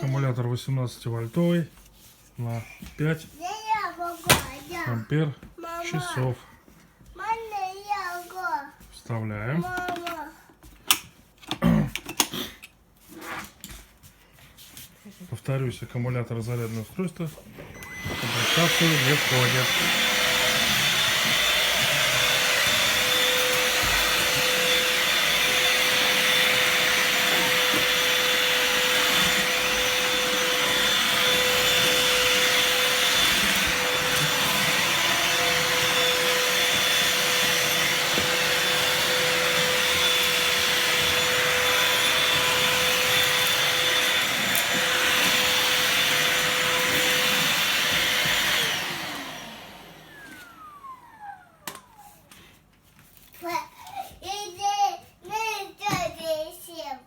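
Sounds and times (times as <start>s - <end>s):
handheld vacuum cleaner running: 0.0s - 0.5s, 17.6s - 52.5s
vacuum motor spinning down: 17.7s - 52.3s.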